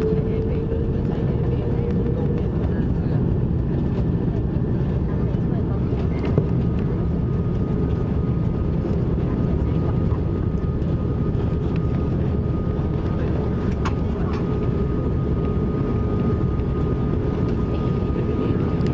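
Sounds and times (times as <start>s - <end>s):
jet engines rumbling: 0.0s - 18.9s.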